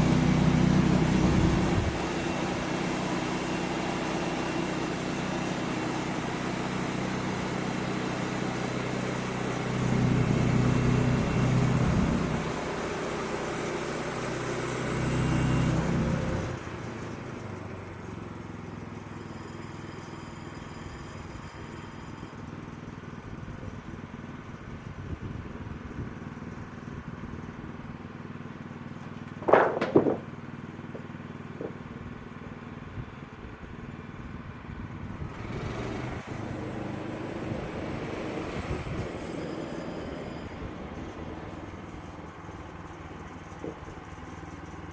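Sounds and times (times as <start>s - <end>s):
sawmill engine running: 0.0s - 44.9s.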